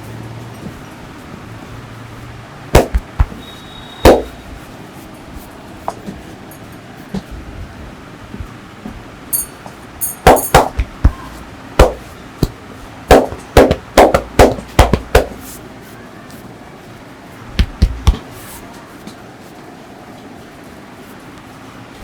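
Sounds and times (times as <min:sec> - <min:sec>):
hands slapping on a body: 0:02.8 - 0:03.4, 0:11.8 - 0:15.4, 0:17.6 - 0:18.2.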